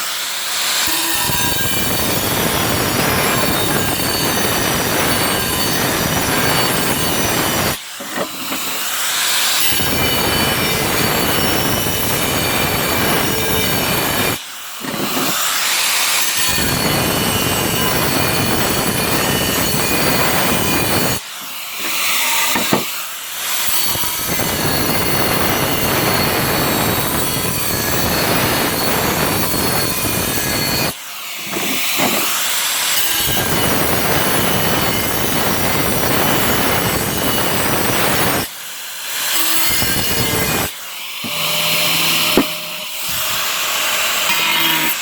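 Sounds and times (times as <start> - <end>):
angle grinder cutting tile: 0.0 - 45.0.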